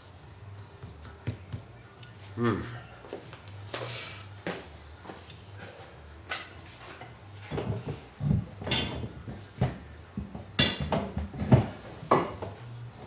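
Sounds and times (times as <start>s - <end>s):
metal tools knocking and clanking: 8.6s - 9.8s, 10.6s - 12.4s.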